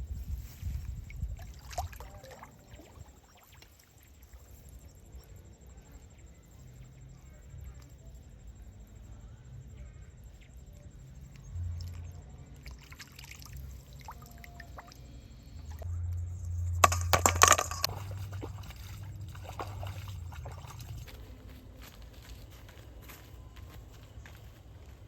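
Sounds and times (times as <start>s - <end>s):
water sloshing and splashing: 0.4s - 4.6s, 11.7s - 15.9s, 16.8s - 21.2s.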